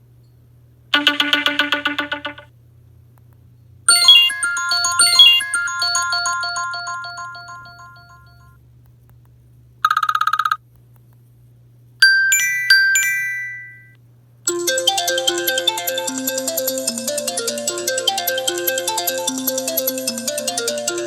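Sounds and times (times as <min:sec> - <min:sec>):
phone ringtone melody: 0:01.0 - 0:02.4, 0:03.9 - 0:08.5, 0:12.0 - 0:13.9, 0:14.5 - 0:21.0
bright chime strikes: 0:03.9 - 0:07.9, 0:12.0 - 0:13.9.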